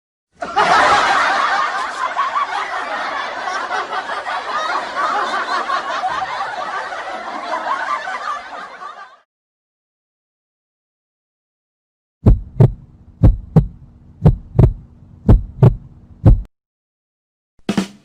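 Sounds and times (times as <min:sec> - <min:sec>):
crowd laughing: 0:00.4 - 0:09.3.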